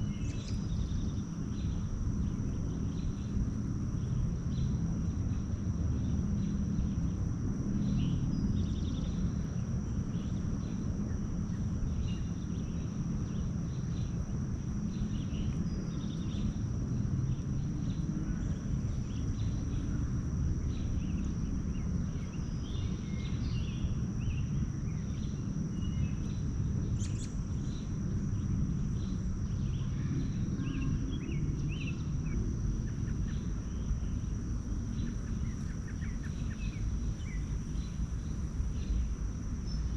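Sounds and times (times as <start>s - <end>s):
steady low rumble: 0.0s - 39.9s
small birds chirping: 27.0s - 27.9s, 28.9s - 39.9s.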